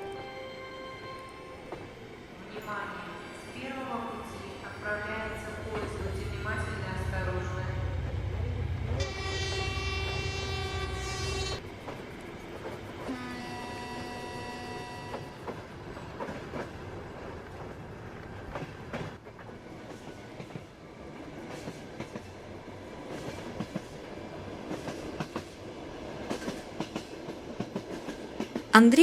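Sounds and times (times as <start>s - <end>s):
train horn: 8.4s - 11.6s, 13.0s - 15.6s.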